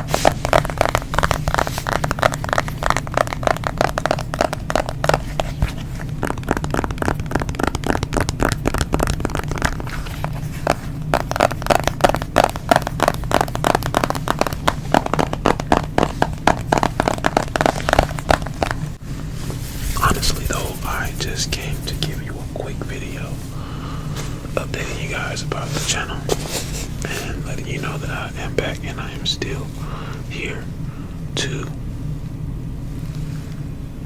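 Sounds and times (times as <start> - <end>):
fingernails tapping on smartphone: 0.0 - 18.8
steady low hum: 0.0 - 34.0.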